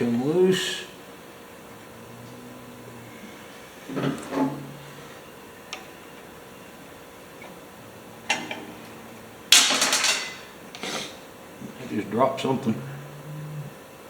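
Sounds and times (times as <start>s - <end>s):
small metal part clattering: 9.5s - 10.5s.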